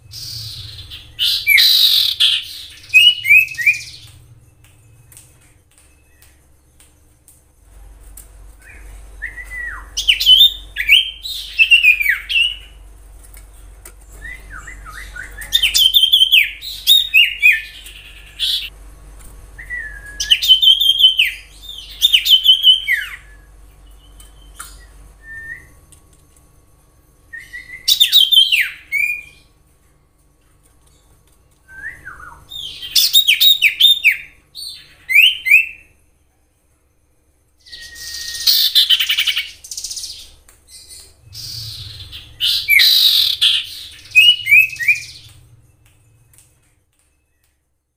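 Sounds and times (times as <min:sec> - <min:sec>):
bird chirping and whistling: 0:00.0 - 0:06.4, 0:08.6 - 0:12.8, 0:14.1 - 0:18.7, 0:19.6 - 0:25.8, 0:27.3 - 0:29.5, 0:31.7 - 0:36.0, 0:37.6 - 0:45.6.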